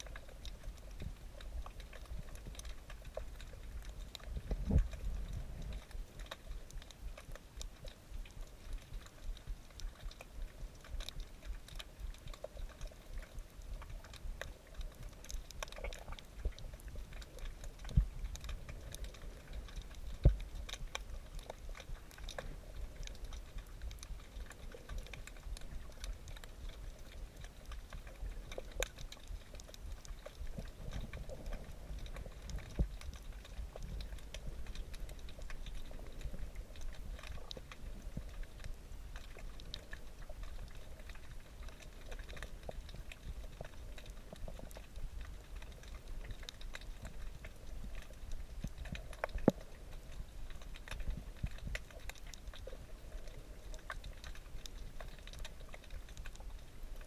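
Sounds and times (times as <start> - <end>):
coral reef clicks underwater: 0.0 - 57.0.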